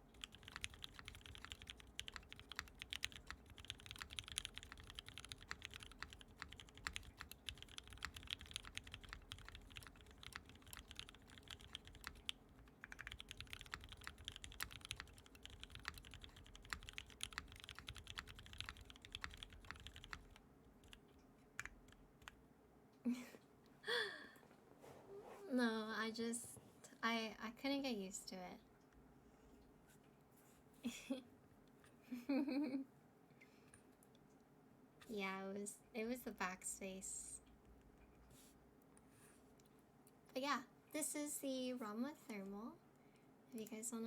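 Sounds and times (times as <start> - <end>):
typing on mechanical keyboard: 0.0 - 21.0, 21.6 - 22.4.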